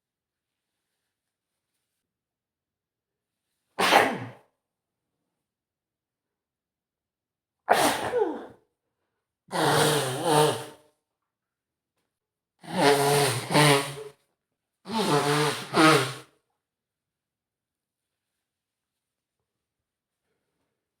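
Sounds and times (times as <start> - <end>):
man sneezing: 3.8 - 4.4, 7.7 - 8.6, 12.6 - 14.1, 14.9 - 16.2.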